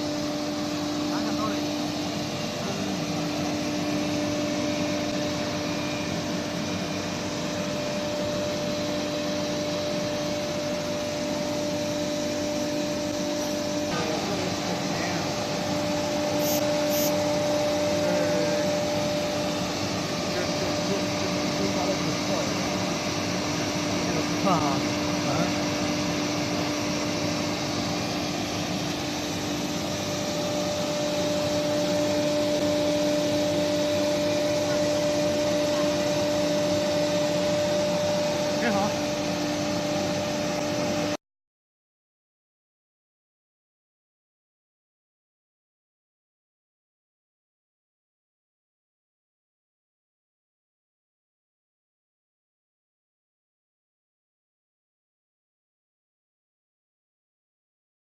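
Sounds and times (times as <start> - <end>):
router machine whine: 0.0 - 41.2.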